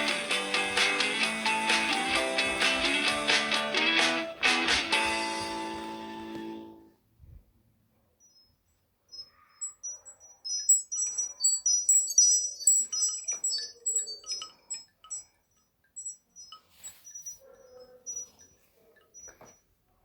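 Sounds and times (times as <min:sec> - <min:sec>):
tinkling chime ringtone: 0:00.0 - 0:03.6, 0:09.6 - 0:19.3.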